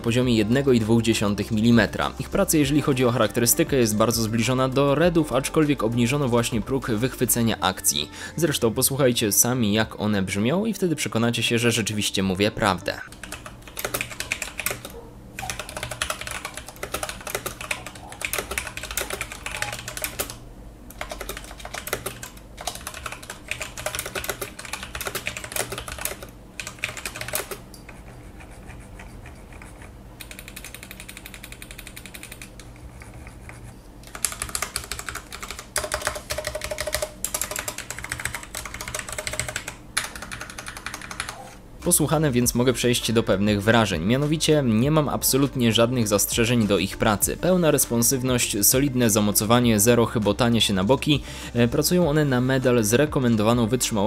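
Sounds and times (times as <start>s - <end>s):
mechanical keyboard typing: 13.1s - 41.5s.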